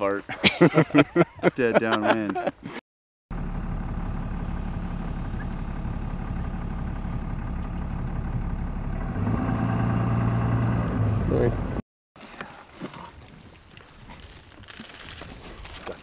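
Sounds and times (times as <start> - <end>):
vehicle engine droning: 3.3 - 11.8.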